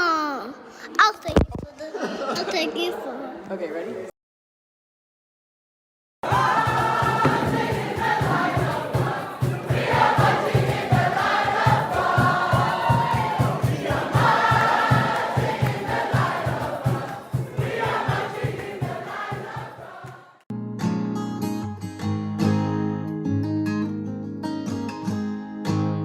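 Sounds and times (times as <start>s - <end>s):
group singing over a beat: 6.2s - 20.4s
acoustic guitar strumming: 6.3s - 19.1s, 20.5s - 26.0s.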